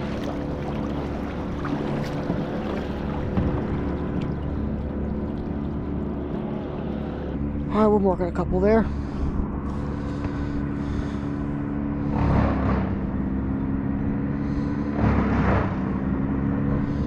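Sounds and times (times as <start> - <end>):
rush of water: 0.0 - 7.3
boat motor humming: 0.0 - 17.0.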